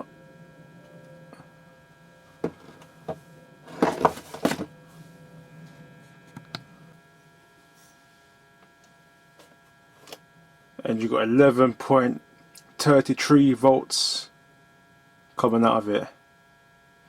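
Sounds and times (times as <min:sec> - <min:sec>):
faint electrical hum: 0:00.0 - 0:17.0.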